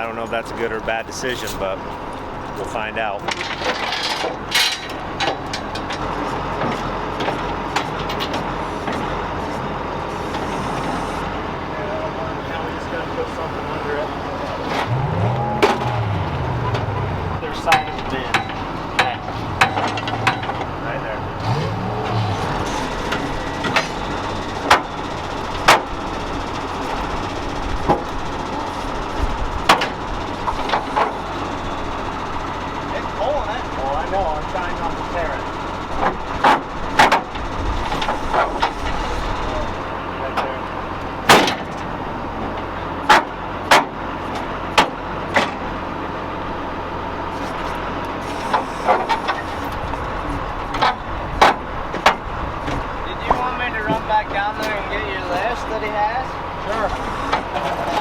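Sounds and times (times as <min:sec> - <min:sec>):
vehicle engines rumbling: 0:00.0 - 0:58.0
sharp metal bangs: 0:14.8 - 0:26.7.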